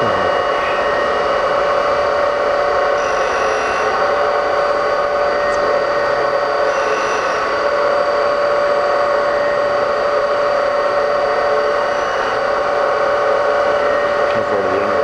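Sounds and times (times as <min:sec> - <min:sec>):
grinding hiss: 0:00.0 - 0:09.6
grinder wheel whine: 0:00.0 - 0:15.0.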